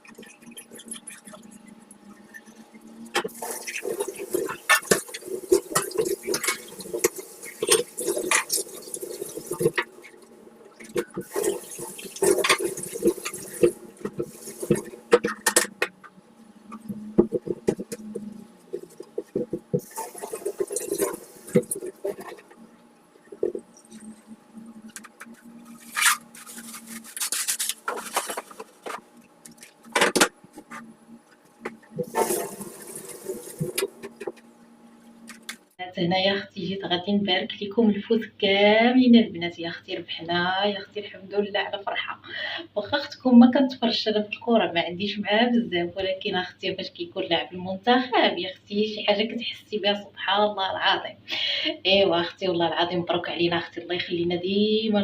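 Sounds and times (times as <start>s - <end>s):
water splashing and pouring: 0.0s - 15.9s, 16.7s - 30.0s, 31.6s - 35.7s
rubbing and scraping: 0.0s - 35.7s
clicks and knocks: 14.1s - 19.8s.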